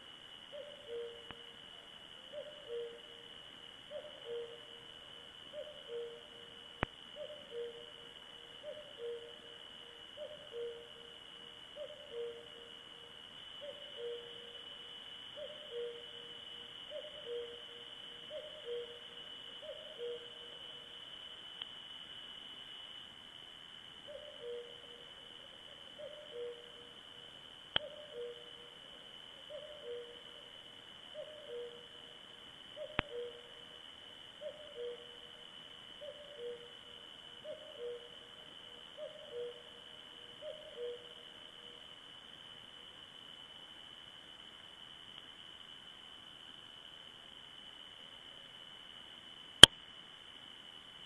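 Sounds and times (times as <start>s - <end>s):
owl hooting: 0.5s - 6.6s, 7.2s - 20.8s, 24.1s - 27.0s, 27.8s - 30.5s, 31.1s - 32.0s, 32.7s - 33.8s, 34.4s - 35.4s, 36.0s - 41.7s.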